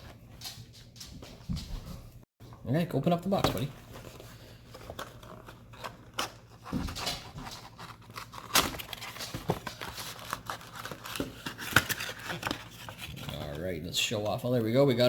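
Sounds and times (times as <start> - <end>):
cardboard rustling and scraping: 3.3 - 13.8.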